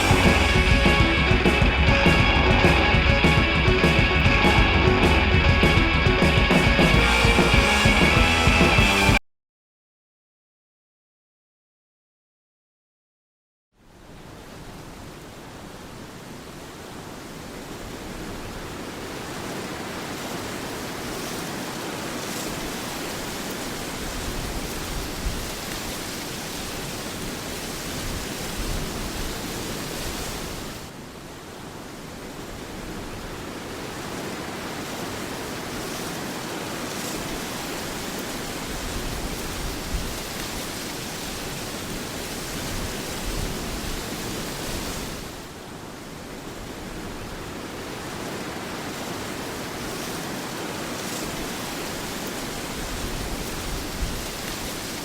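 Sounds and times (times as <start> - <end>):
steady rushing noise: 0.0 - 9.2.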